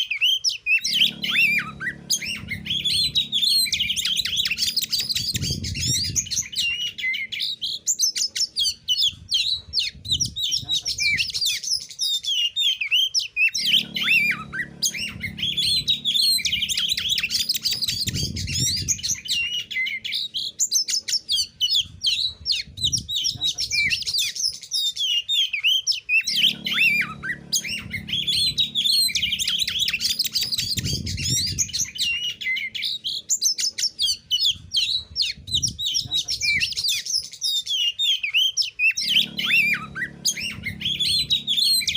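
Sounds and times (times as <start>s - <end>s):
bird singing whistles and trills: 0.0s - 41.9s
low hum: 0.7s - 11.4s, 13.5s - 24.1s, 26.2s - 36.8s, 38.9s - 41.9s.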